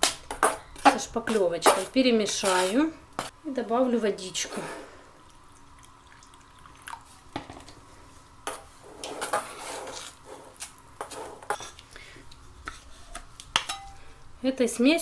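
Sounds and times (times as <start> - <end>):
tool scraping and knocking container: 0.0 - 3.3, 8.5 - 11.8.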